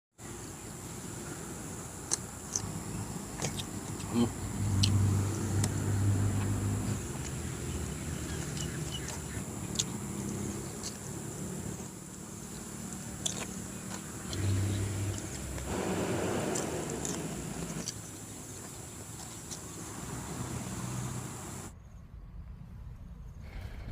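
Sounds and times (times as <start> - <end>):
person chewing food: 2.1 - 19.7
low hummed tone: 13.4 - 18.3.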